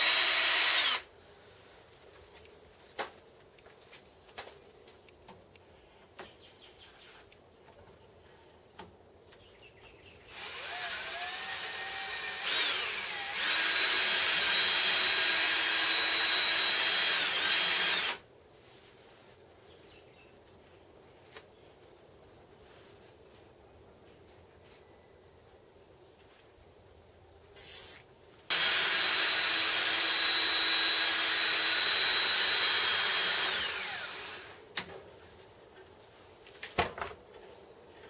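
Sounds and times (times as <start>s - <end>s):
electric drill whining: 0.0s - 1.1s, 10.3s - 18.2s, 28.5s - 34.7s.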